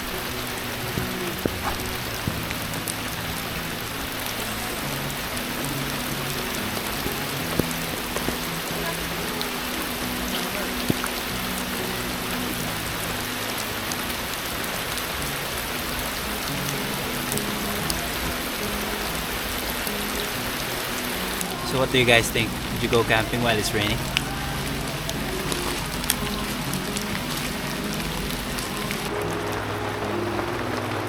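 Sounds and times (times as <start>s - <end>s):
rain on tarps: 0.0s - 31.0s
soft background music: 0.0s - 31.0s.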